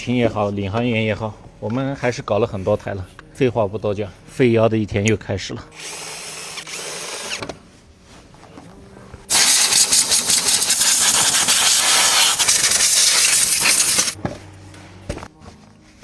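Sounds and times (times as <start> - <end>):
loud steady hiss: 9.3 - 14.2.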